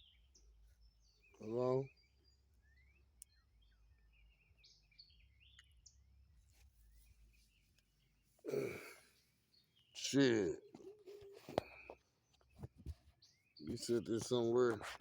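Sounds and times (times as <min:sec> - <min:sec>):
faint bird chirps: 0:00.0 - 0:14.6
person sighing: 0:08.5 - 0:09.1.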